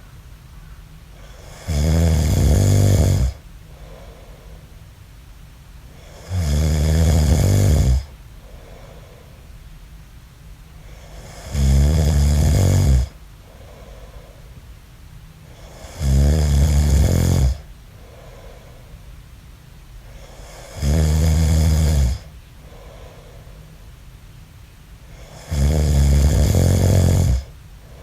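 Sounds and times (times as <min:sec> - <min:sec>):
man snoring: 0:01.2 - 0:04.2, 0:06.0 - 0:08.1, 0:10.9 - 0:13.2, 0:15.6 - 0:17.7, 0:20.2 - 0:23.2, 0:25.1 - 0:27.5
soft breathing: 0:03.3 - 0:04.9, 0:08.0 - 0:09.7, 0:13.1 - 0:14.8, 0:17.5 - 0:19.3, 0:22.1 - 0:24.0, 0:27.3 - 0:28.0.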